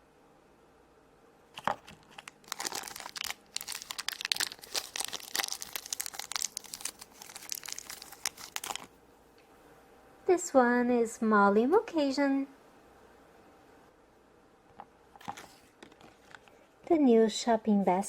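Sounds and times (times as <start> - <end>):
plastic wrapper crackling: 1.6 - 9.0, 15.2 - 16.6.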